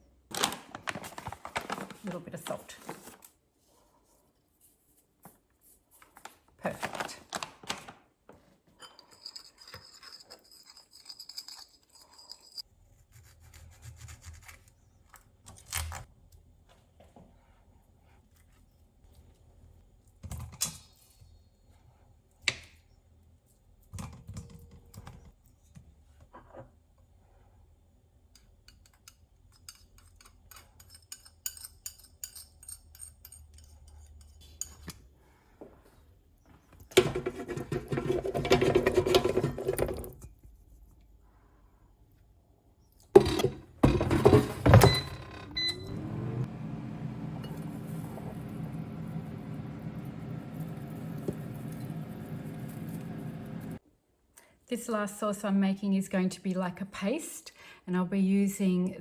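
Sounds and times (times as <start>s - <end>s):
utensils and dishes clinking: 43.2s - 45.5s.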